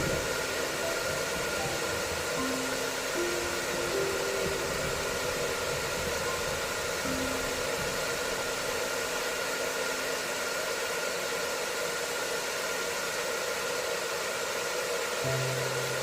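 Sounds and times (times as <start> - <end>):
faint held melody note: 0.0 - 9.1, 15.2 - 16.0
hair dryer running: 0.0 - 16.0.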